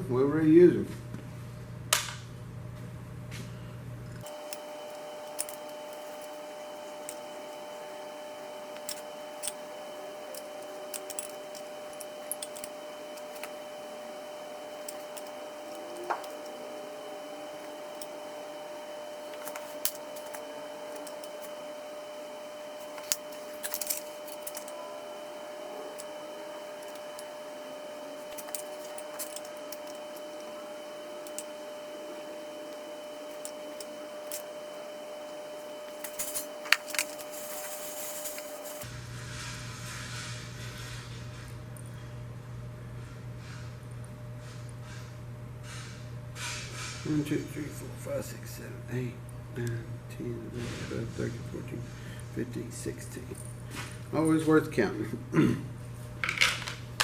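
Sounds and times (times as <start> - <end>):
faint steady hum: 0.0 - 39.2
wrench and nuts clinking: 4.2 - 7.7, 8.6 - 18.5, 19.2 - 21.6, 22.8 - 31.7, 35.9 - 38.9.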